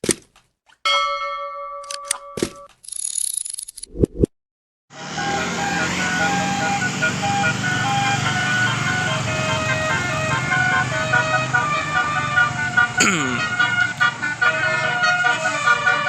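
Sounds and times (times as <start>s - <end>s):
bus engine running: 4.9s - 16.0s
multi-tone bus horn tune: 4.9s - 16.0s.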